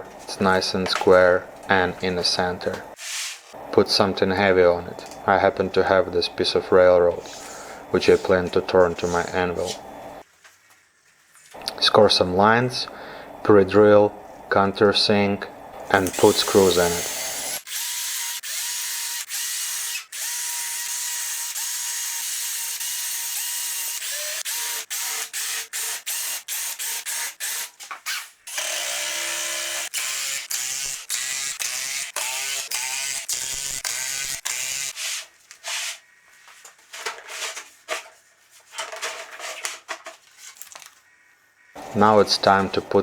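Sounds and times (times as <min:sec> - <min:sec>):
electric drill whining: 0:16.0 - 0:27.6, 0:28.5 - 0:35.0.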